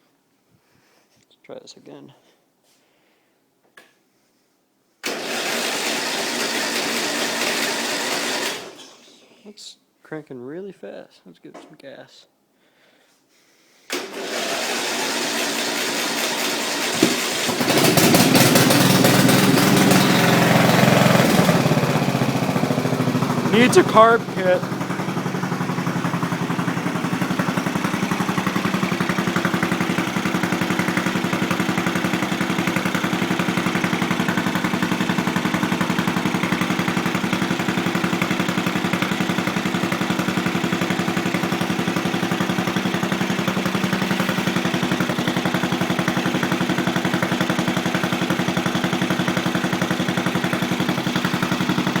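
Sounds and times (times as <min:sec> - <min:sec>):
man talking: 0:01.3 - 0:02.3, 0:09.4 - 0:12.3, 0:23.5 - 0:24.7
lawn tractor engine running: 0:05.0 - 0:09.0, 0:13.9 - 0:52.0.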